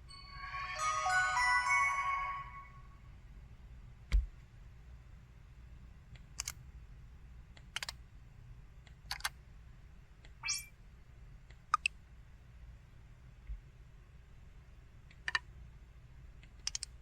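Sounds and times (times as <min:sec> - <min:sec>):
rising electronic chirp: 0:00.1 - 0:03.0.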